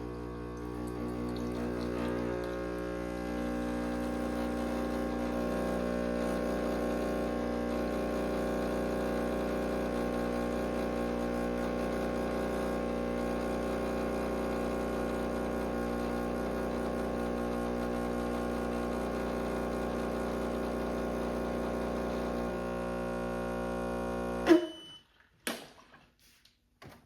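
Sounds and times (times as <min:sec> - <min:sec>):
espresso machine pump humming: 0:00.0 - 0:24.6.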